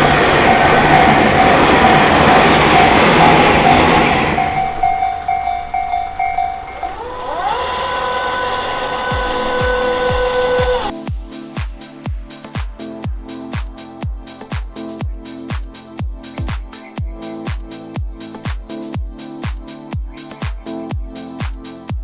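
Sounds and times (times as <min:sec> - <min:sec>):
level crossing bell ringing: 0:00.0 - 0:07.2
steady whine: 0:00.0 - 0:10.9
train passing: 0:00.0 - 0:19.9.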